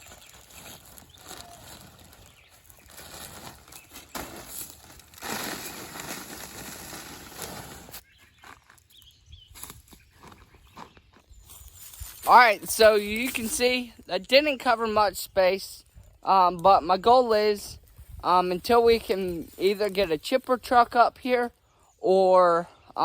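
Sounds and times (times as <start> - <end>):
mulch rustling on plastic sacking: 0.0 - 8.0.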